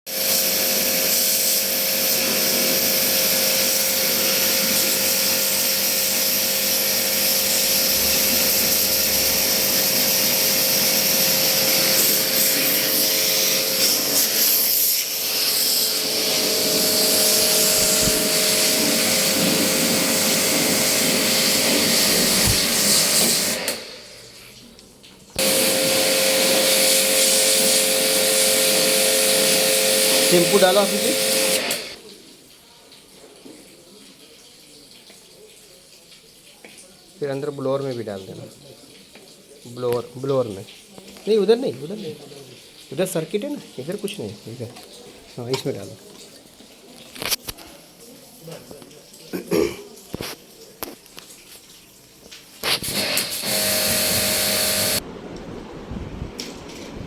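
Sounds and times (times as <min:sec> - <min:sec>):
pressure washer motor whine: 0:00.1 - 0:24.1, 0:25.4 - 0:32.0, 0:52.8 - 0:55.7
water spray hiss: 0:00.1 - 0:24.7, 0:25.4 - 0:32.2, 0:52.3 - 0:55.0.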